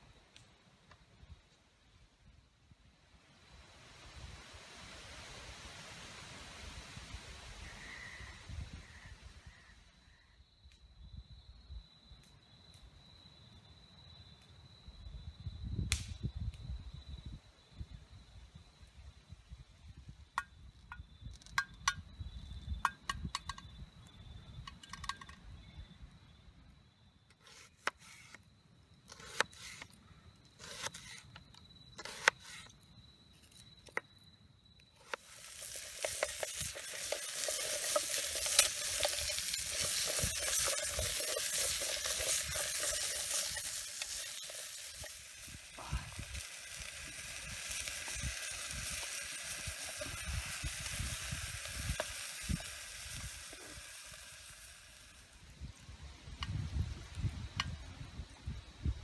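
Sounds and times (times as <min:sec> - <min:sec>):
cooking utensils clicking and knocking: 0:35.0 - 0:45.6
food sizzling in a hot pan: 0:35.0 - 0:55.5.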